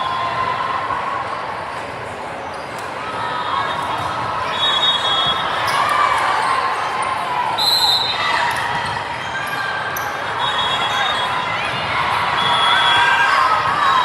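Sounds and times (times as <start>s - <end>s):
echoing crowd chatter: 0.0s - 14.0s
sneakers squeaking on court: 2.4s - 7.3s, 7.9s - 11.8s.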